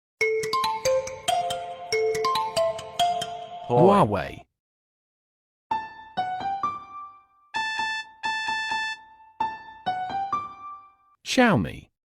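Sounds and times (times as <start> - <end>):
phone ringtone melody: 7.6 - 9.4.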